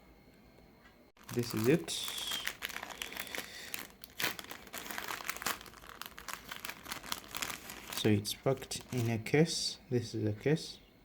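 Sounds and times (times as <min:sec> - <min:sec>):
packaging crinkling: 0:01.2 - 0:09.3.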